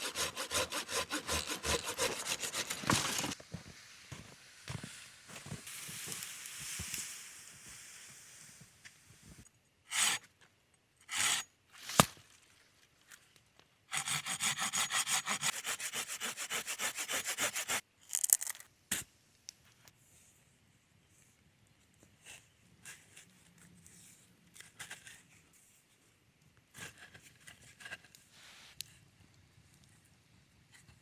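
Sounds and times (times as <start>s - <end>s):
blade sawing back and forth: 0.0s - 3.4s, 9.9s - 10.2s, 11.1s - 12.1s, 13.9s - 17.8s.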